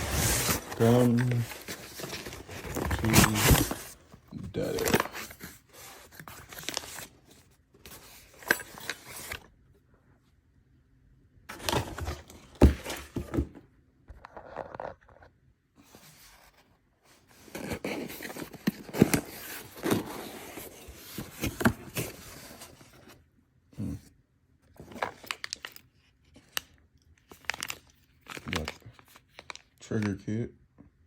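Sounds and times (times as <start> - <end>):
packaging scraping and rustling: 0.0 - 9.4, 17.3 - 23.2
box knocks and bumps: 12.5 - 13.6.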